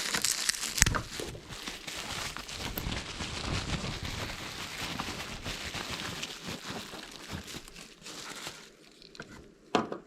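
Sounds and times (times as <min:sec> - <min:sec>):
packaging crinkling and rustling: 0:00.0 - 0:09.5.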